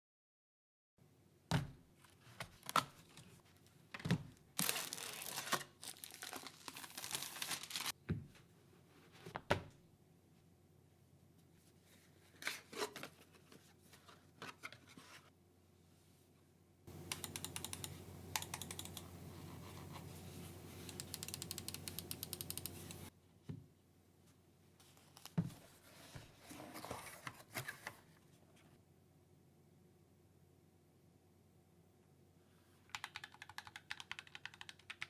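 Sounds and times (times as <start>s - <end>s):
keyboard and mouse handling: 16.9s - 23.1s
keyboard keys clicking: 16.9s - 23.1s.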